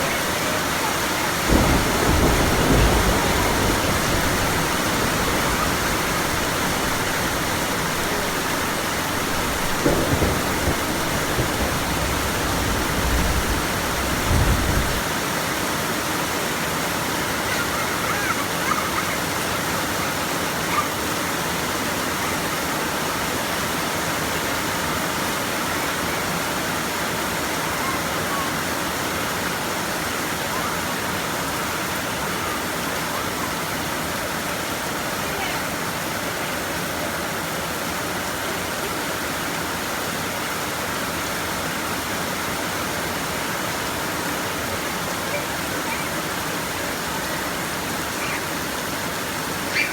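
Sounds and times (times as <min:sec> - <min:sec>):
low rumbles: 0:00.0 - 0:15.0
heavy rain pouring: 0:00.0 - 0:49.9.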